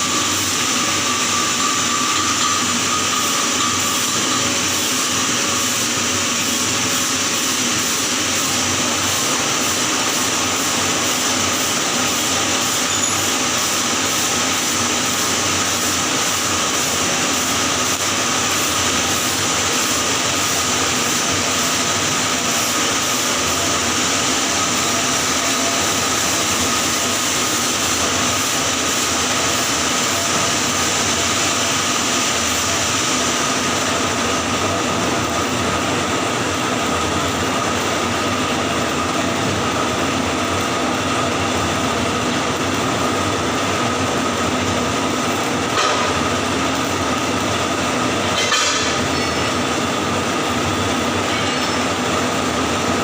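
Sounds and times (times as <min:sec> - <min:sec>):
welding arc crackling: 0:00.0 - 0:53.0.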